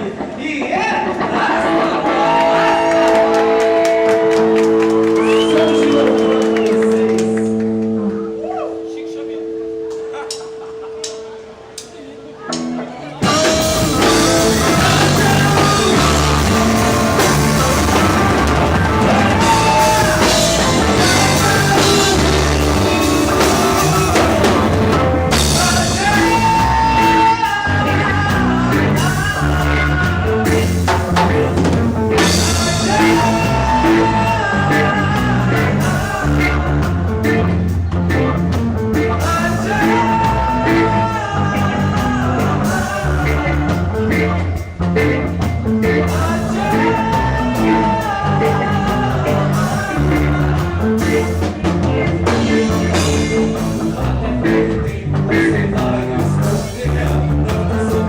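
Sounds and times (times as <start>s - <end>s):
guitar: 0.0s - 58.0s
drum kit: 12.5s - 58.0s
lead singer singing: 13.2s - 58.0s.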